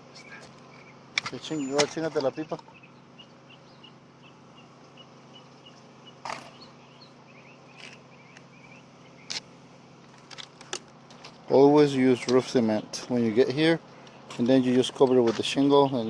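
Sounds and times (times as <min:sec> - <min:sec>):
bird chirping: 0:00.0 - 0:09.5.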